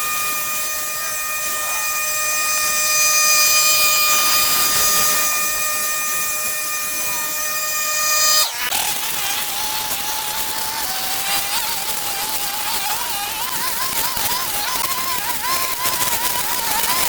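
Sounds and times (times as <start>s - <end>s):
motorised machine whine: 0.0s - 17.0s.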